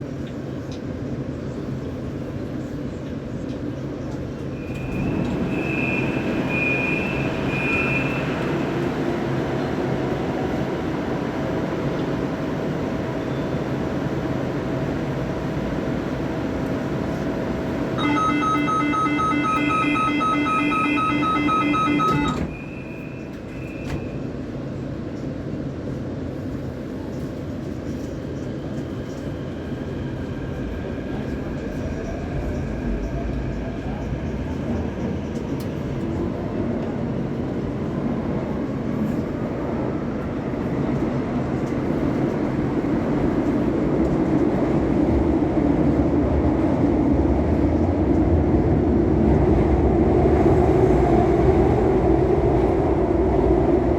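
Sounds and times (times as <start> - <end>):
metro train accelerating: 0.0 - 53.9
steady electronic tone: 18.0 - 22.6.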